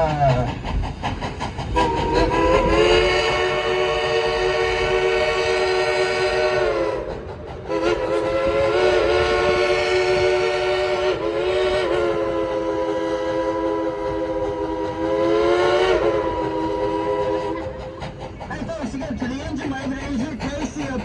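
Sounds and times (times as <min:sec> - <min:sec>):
steam locomotive chime whistle: 0:01.8 - 0:07.0, 0:07.7 - 0:17.8.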